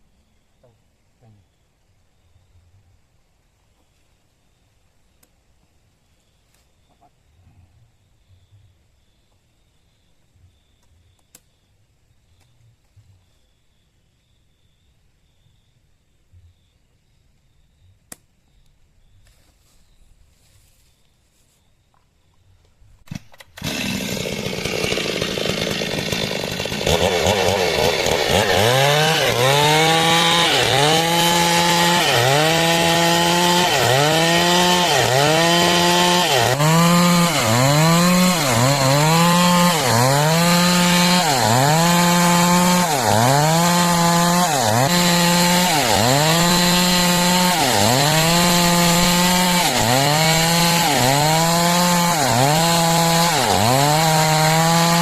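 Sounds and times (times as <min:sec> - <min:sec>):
chainsaw cutting through log: 0:23.1 - 0:55.0.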